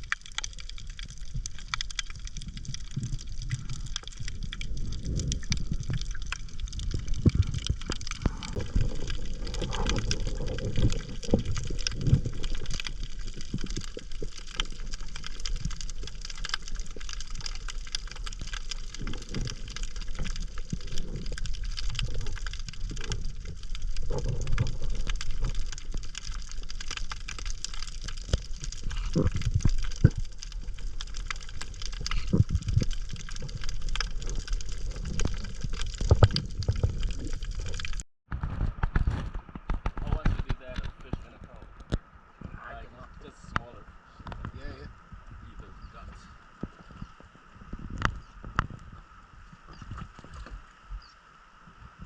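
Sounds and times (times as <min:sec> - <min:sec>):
small scattered clicks: 0:00.0 - 0:38.0
water sloshing and gurgling: 0:00.0 - 0:52.0.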